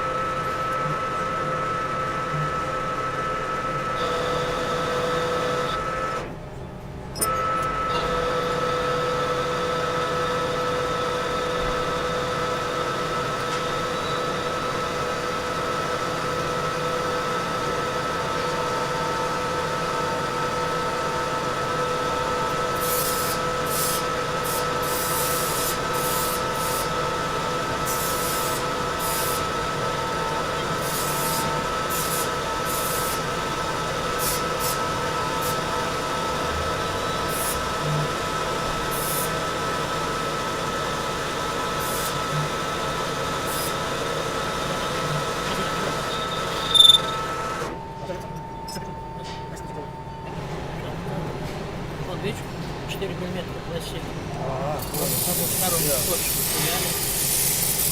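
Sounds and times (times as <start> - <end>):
metal lathe whining: 7.2 - 49.8, 54.8 - 57.9
high hiss of cutting: 54.8 - 57.9.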